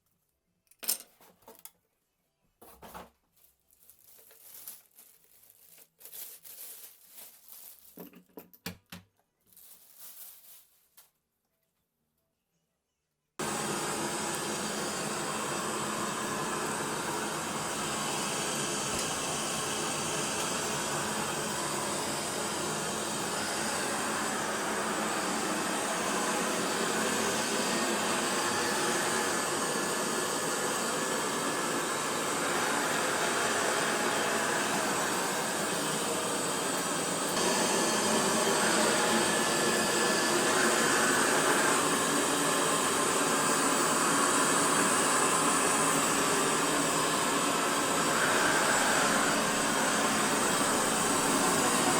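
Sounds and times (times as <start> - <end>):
robot vacuum cleaner whirring: 13.4 - 51.9.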